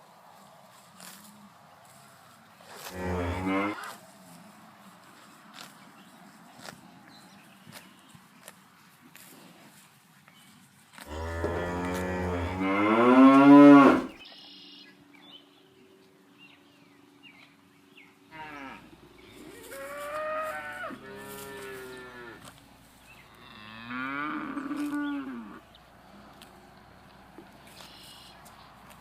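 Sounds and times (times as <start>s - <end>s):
cows mooing: 2.8s - 3.8s, 11.1s - 14.2s, 23.4s - 25.6s.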